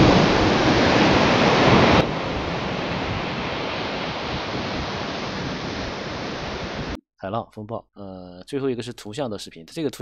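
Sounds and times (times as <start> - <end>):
stormy ocean surf: 0.0 - 7.0
wind: 0.0 - 7.0.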